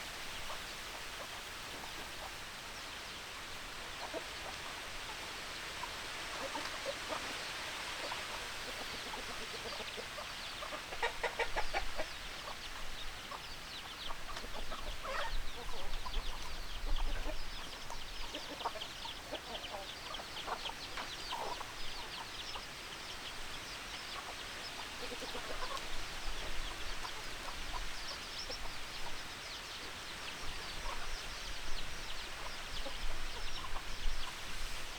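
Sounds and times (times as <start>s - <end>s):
chickens clucking: 0.4s - 34.9s.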